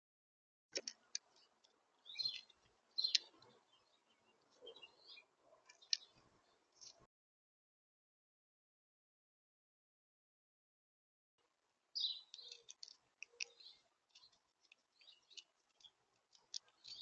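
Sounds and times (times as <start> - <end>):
small birds chirping: 0.8 - 7.1, 11.9 - 17.0
sharp clicks: 12.3 - 17.0.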